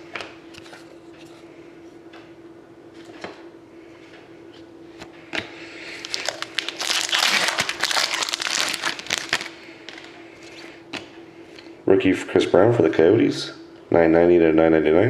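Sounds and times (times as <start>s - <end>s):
plastic wrapper crinkling: 5.9s - 10.7s.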